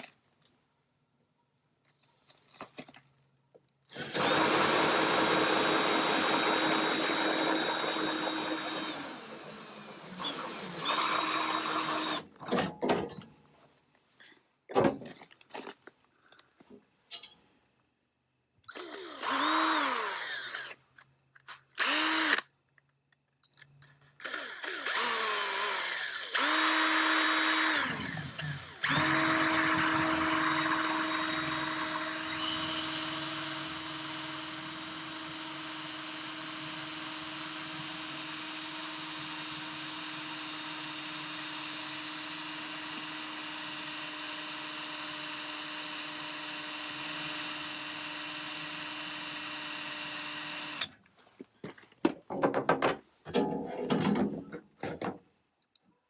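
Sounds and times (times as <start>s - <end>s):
electric drill spinning: 3.9s - 12.3s, 18.7s - 20.8s, 21.7s - 22.4s, 24.2s - 50.9s.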